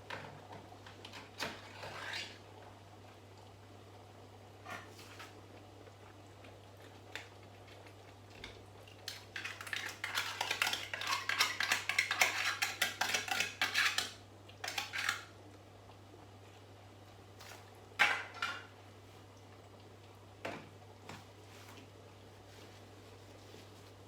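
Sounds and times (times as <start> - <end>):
spoon scraping cooking pot: 9.1 - 15.2.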